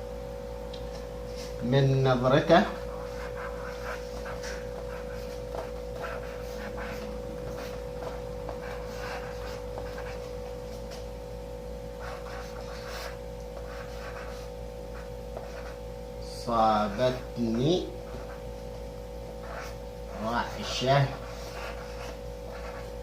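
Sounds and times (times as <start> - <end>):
steady hum: 0.0 - 23.0
pen scratching on paper: 2.7 - 10.3, 12.0 - 15.8, 18.1 - 18.4, 19.4 - 23.0.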